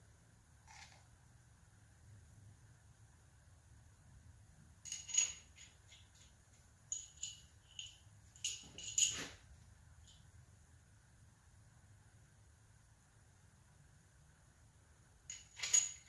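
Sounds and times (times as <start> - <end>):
steel hardware clinking on metal: 4.9 - 9.4, 15.3 - 16.0.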